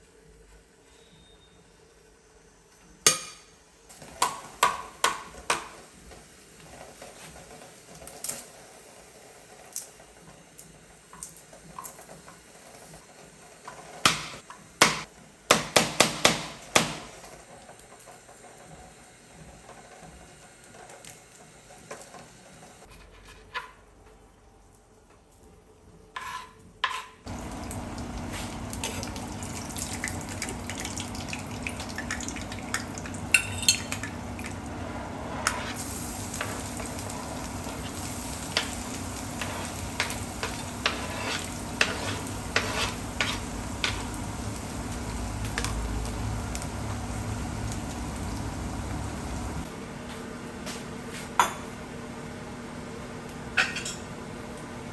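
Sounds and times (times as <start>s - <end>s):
food sizzling in a pan: 27.3s - 49.7s.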